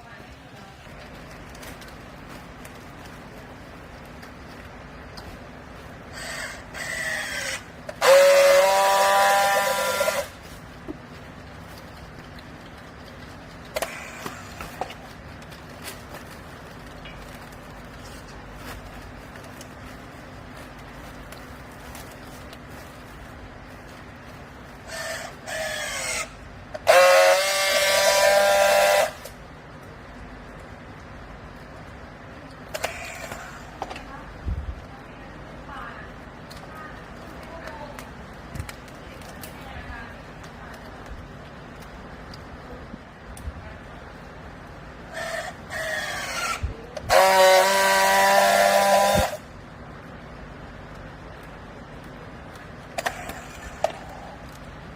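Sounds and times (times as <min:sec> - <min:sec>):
steady background hum: 0:00.0 - 0:54.9
horn blasts: 0:08.0 - 0:10.4, 0:26.8 - 0:29.4, 0:47.1 - 0:49.4.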